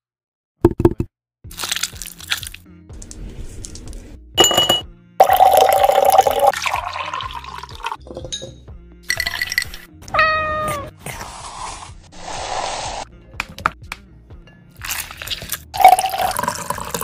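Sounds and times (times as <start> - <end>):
background music: 0.9 - 17.0
glassware clinking: 4.4 - 7.1, 8.0 - 9.8
liquid poured into a glass: 5.2 - 8.2, 14.8 - 17.0.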